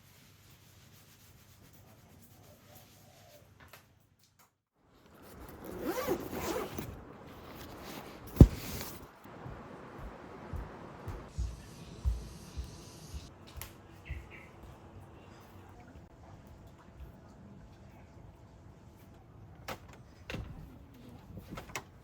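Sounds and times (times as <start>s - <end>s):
rasping rubbing handling sound: 5.0s - 9.2s.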